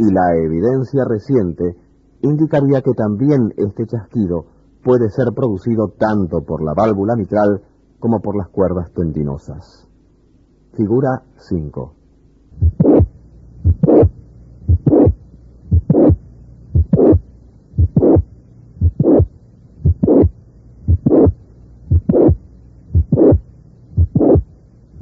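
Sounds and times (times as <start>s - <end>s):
high-pitched heart murmur: 12.5s - 24.5s
heartbeat through stethoscope: 12.6s - 24.5s.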